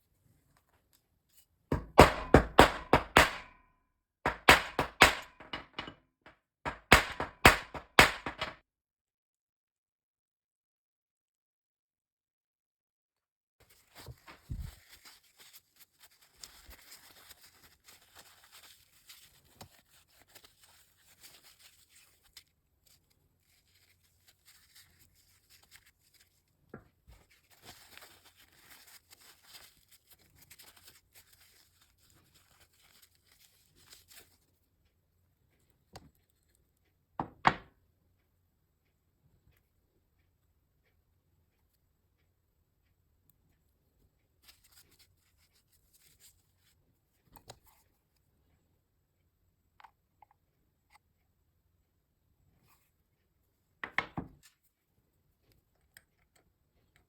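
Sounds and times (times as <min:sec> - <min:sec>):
loud knocks: 0:01.7 - 0:03.5, 0:04.3 - 0:06.0, 0:06.7 - 0:08.6
scraping and rustling by hand: 0:13.6 - 0:34.6.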